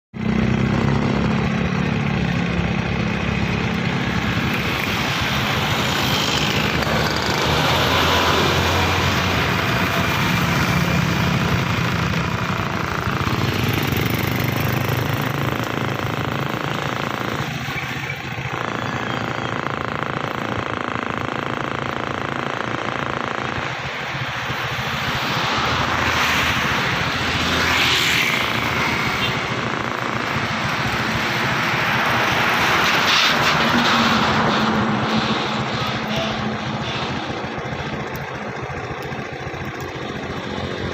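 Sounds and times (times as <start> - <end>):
bus engine drone: 0.1 - 40.9
road and wind noise: 0.1 - 40.9.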